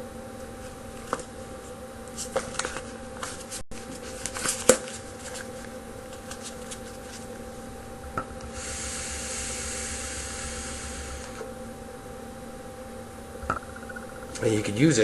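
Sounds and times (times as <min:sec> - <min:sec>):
airy hiss of vape drag: 0:08.5 - 0:11.5.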